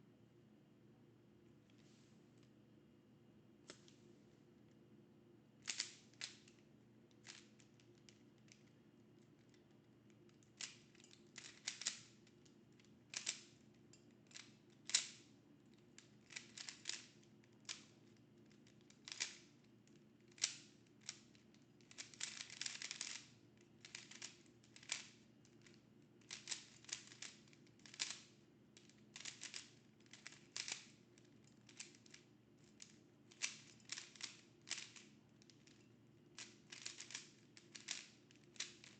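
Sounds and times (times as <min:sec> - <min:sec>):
plastic puzzle cube clicking: 0:05.6 - 0:06.6, 0:10.6 - 0:12.2, 0:13.1 - 0:13.6, 0:14.3 - 0:15.2, 0:16.2 - 0:17.9, 0:19.0 - 0:19.5, 0:20.3 - 0:25.2, 0:26.2 - 0:30.9, 0:31.7 - 0:35.8, 0:36.4 - 0:38.9.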